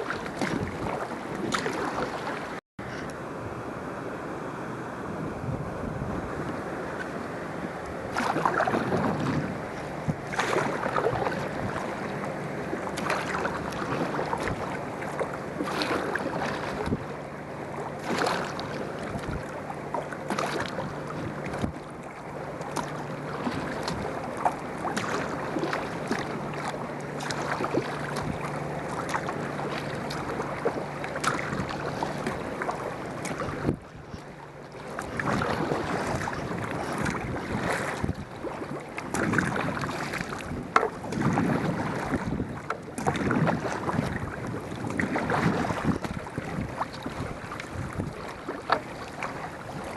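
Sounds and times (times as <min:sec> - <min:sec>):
wind buffeting microphone: 0:00.0 - 0:02.2, 0:05.0 - 0:14.9, 0:15.6 - 0:19.6, 0:20.3 - 0:22.0, 0:22.8 - 0:49.9
paddle strokes splashing water: 0:00.0 - 0:03.1, 0:06.3 - 0:49.9.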